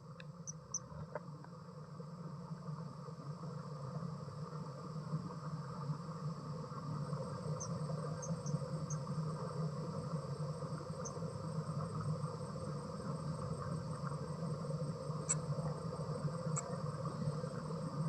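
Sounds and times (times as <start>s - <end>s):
insect chorus: 0.0s - 18.0s
low steady hum: 0.0s - 18.0s.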